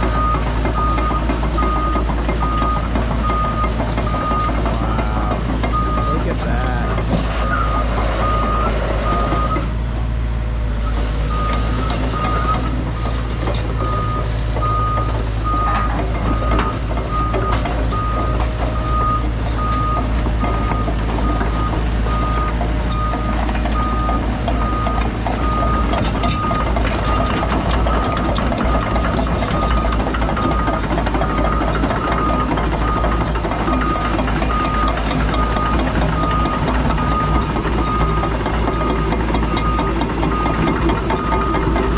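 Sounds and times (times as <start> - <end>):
heavy machine engine running: 0.0 - 41.9
backup alarm beeping: 30.5 - 41.7.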